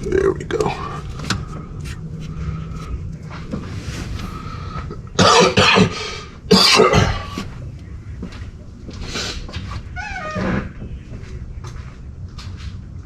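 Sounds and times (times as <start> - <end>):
person coughing: 5.2 - 7.4.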